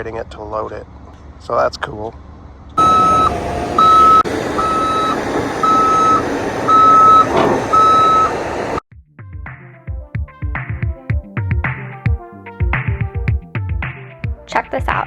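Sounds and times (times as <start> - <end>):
diesel engine running: 2.2 - 8.8
excavator backup alarm beeping: 2.8 - 8.8.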